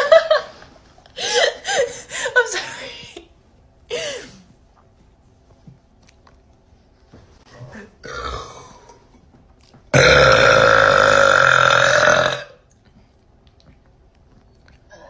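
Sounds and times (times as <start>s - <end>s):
woman burping: 8.0s - 8.8s, 10.0s - 12.6s.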